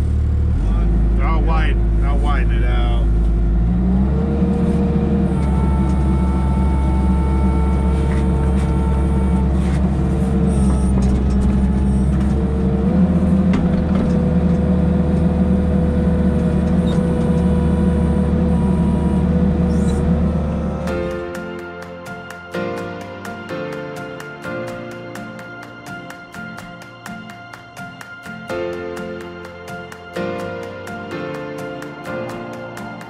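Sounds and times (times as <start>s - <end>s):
hydraulic whine: 0.0s - 22.3s
excavator engine running: 0.0s - 33.0s.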